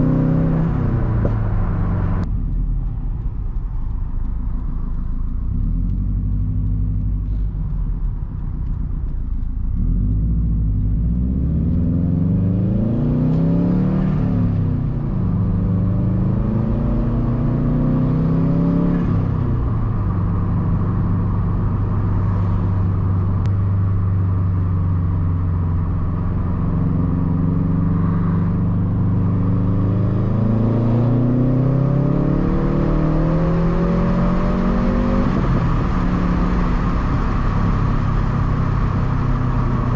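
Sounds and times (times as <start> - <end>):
car engine revving while driving: 0.0 - 39.9.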